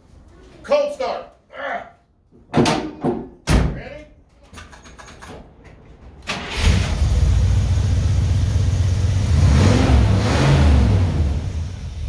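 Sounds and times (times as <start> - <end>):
car engine cranking and revving: 6.3 - 12.0.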